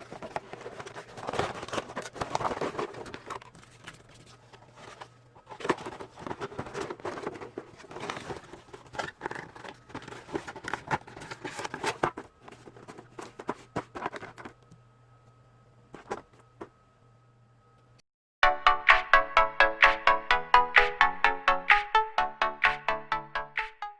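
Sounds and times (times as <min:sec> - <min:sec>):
plastic packaging rustling: 0:00.0 - 0:14.6, 0:15.9 - 0:16.7.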